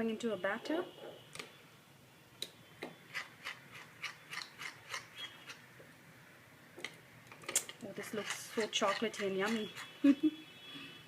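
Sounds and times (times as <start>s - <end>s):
spatula scraping a container: 3.1s - 5.6s, 7.9s - 10.0s.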